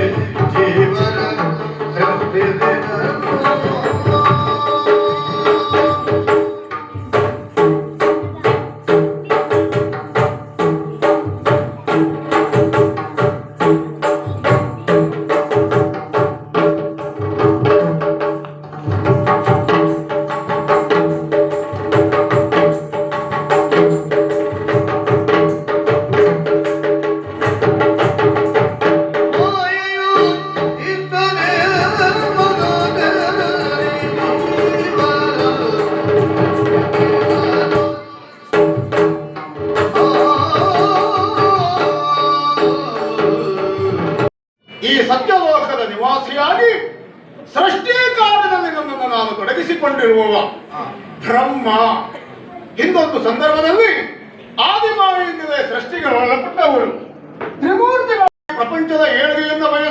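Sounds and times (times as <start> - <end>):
person singing: 0.0 - 7.4, 29.3 - 44.3
rapid hand-drum strokes: 0.0 - 44.3.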